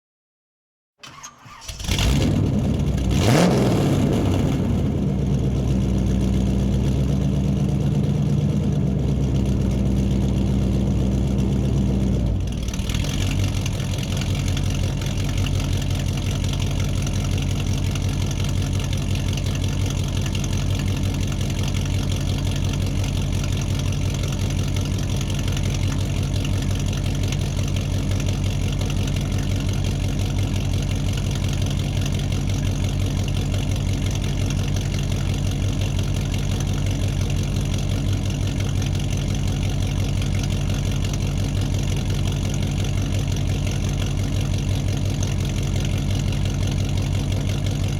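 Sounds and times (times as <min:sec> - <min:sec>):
engine revving: 0:01.0 - 0:15.2
car engine starting and idling: 0:01.0 - 0:47.9.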